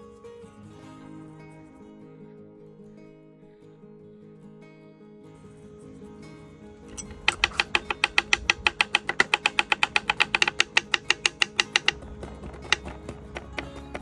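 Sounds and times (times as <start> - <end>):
fast sharp taps: 6.9 - 14.0.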